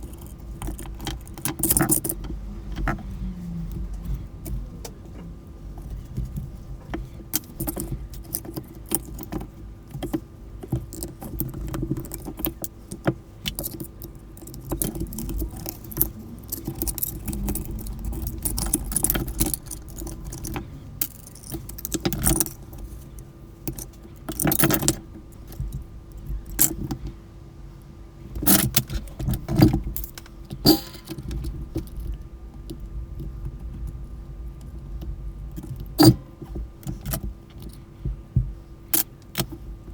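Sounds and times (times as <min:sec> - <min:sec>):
plastic parts clicking and rattling: 0:00.0 - 0:03.1, 0:03.7 - 0:27.1, 0:28.4 - 0:33.8.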